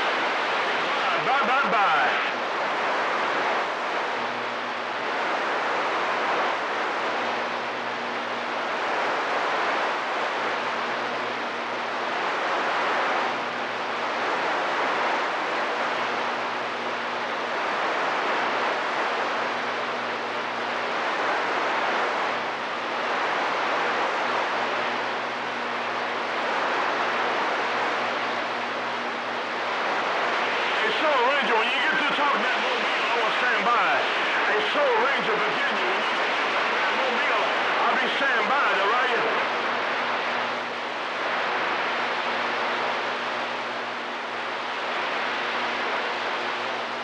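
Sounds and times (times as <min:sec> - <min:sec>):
faint low hum: 0:00.0 - 0:47.0
radio static hiss: 0:00.0 - 0:47.0.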